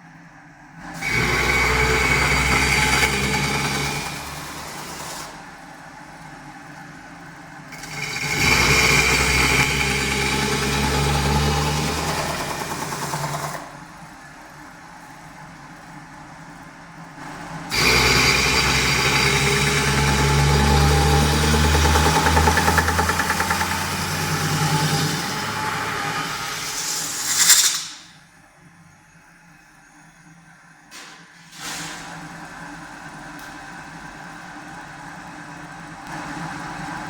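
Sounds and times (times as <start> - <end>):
metal spinning machine whine: 7.7 - 13.6, 17.4 - 28.2.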